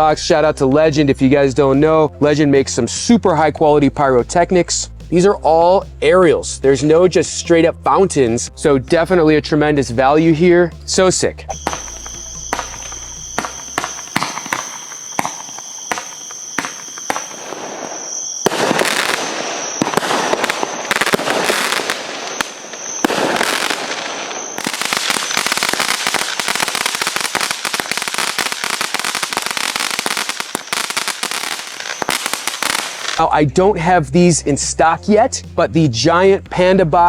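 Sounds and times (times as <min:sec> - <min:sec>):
thin steady high tone: 0:11.5 - 0:18.4
fireworks popping: 0:11.5 - 0:33.2
fireworks crackling and bursting: 0:11.5 - 0:33.3.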